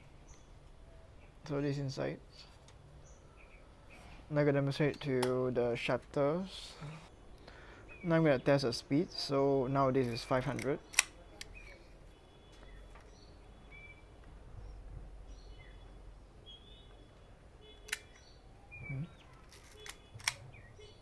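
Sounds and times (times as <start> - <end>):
faint bird chirps: 2.4 - 4.2, 11.2 - 21.0
camera handling sound: 10.0 - 11.8, 19.4 - 20.4.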